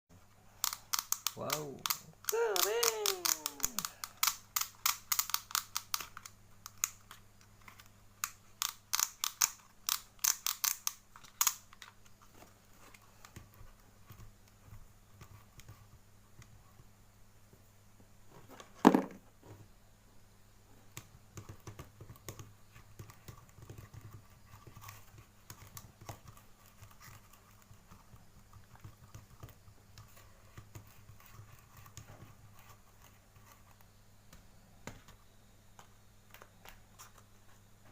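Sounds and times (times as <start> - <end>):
toy packaging crinkling: 2.2 - 4.3.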